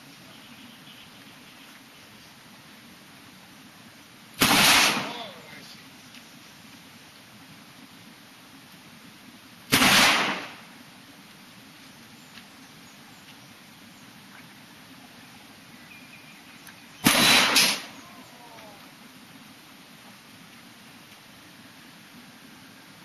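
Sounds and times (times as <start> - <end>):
gunshots: 4.4 - 5.4, 9.7 - 10.6, 17.0 - 18.0.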